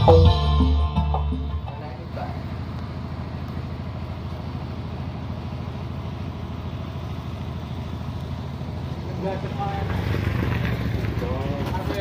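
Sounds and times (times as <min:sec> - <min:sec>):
music: 0:00.0 - 0:02.0
engine idling: 0:00.0 - 0:12.0.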